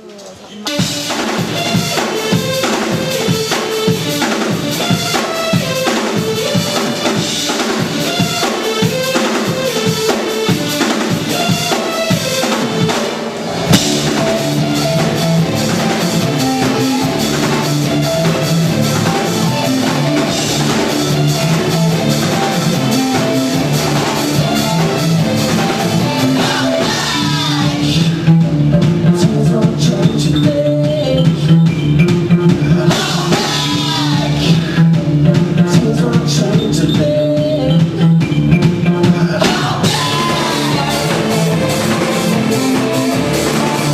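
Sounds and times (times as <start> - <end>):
held pitched instrument notes: 0.6 - 28.8, 37.6 - 43.9
drum kit kick and snare: 0.7 - 37.6, 38.2 - 43.9.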